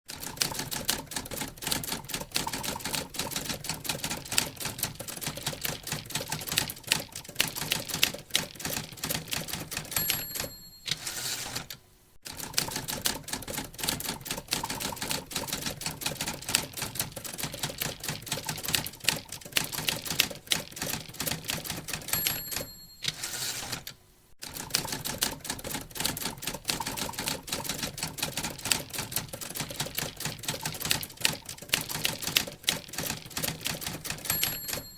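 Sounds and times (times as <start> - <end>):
typewriter keys clacking: 0.1 - 34.9
typewriter carriage return rattle: 0.2 - 11.8, 12.4 - 34.9
typewriter bell ding: 9.8 - 11.6, 21.9 - 23.8, 34.1 - 34.9.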